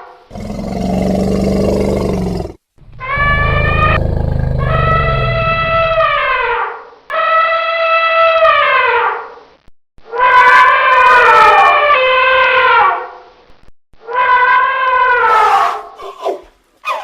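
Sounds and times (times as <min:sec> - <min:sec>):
elephant trumpeting: 0:00.3 - 0:06.5.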